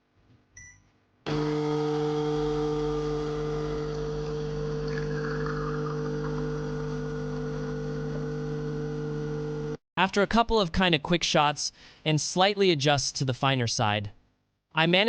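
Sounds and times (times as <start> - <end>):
espresso machine pump humming: 1.3 - 9.8.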